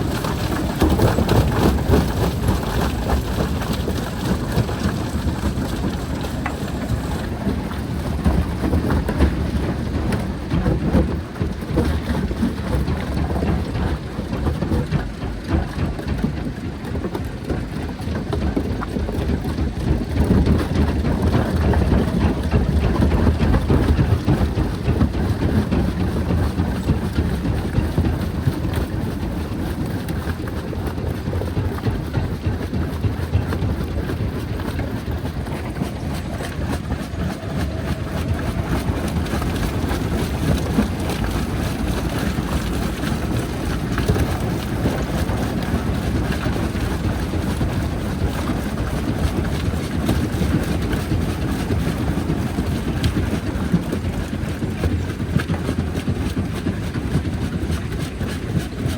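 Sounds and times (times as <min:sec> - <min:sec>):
deep machine drone: 0:18.3 - 0:51.2.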